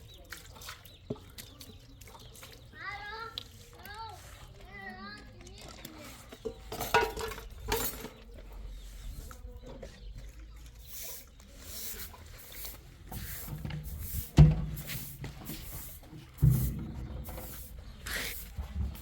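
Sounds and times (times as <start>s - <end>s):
heavy thumps: 13.2s - 15.4s, 16.4s - 17.6s.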